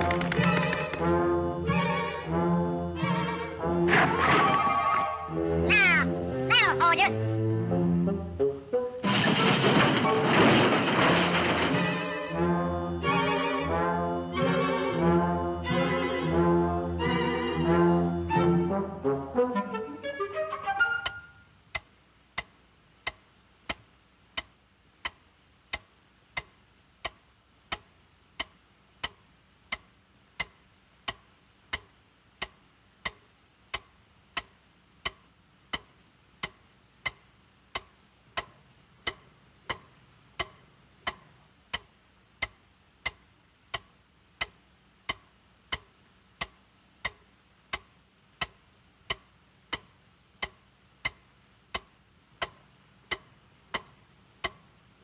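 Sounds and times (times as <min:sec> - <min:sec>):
clock ticking: 0:21.0 - 0:55.0.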